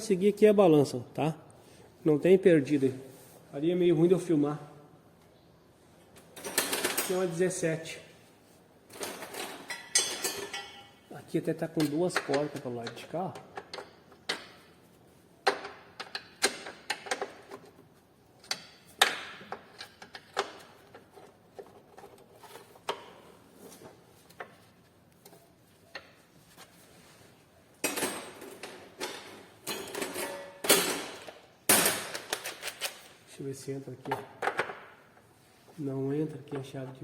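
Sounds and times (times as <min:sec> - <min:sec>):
hand tools clanking on metal: 0:08.9 - 0:11.1.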